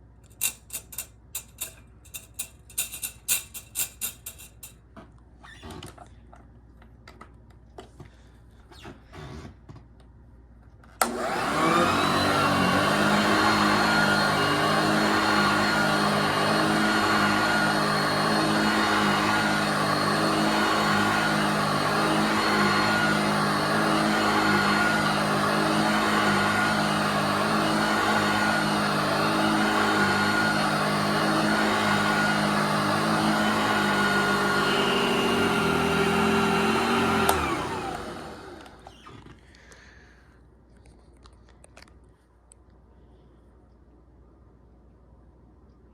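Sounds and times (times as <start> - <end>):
vacuum cleaner clicks and knocks: 11.0 - 11.5
vacuum cleaner motor humming: 11.0 - 39.4.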